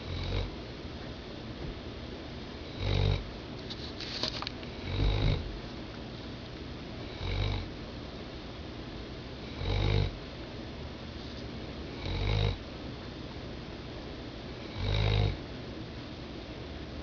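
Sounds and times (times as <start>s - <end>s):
person snoring: 0.0s - 0.5s, 2.8s - 3.2s, 4.8s - 5.5s, 7.1s - 7.7s, 9.5s - 10.2s, 12.0s - 12.6s, 14.7s - 15.4s.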